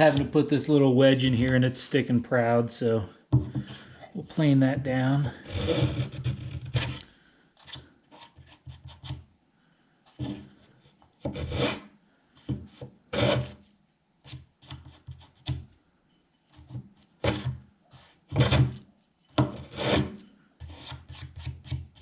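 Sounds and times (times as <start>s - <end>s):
hand plane scraping wood: 5.4s - 7.0s, 11.3s - 11.9s, 13.1s - 13.6s, 17.2s - 17.5s, 18.3s - 18.8s, 19.4s - 22.0s.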